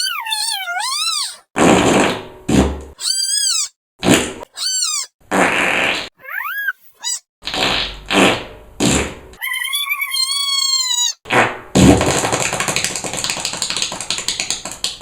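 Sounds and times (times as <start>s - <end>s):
high-pitched squealing screams: 0.0s - 1.5s, 3.0s - 3.8s, 4.4s - 5.1s, 6.2s - 7.2s, 9.4s - 11.2s
fart sound effects: 1.6s - 2.8s, 5.3s - 6.2s, 7.4s - 9.2s, 11.3s - 13.1s.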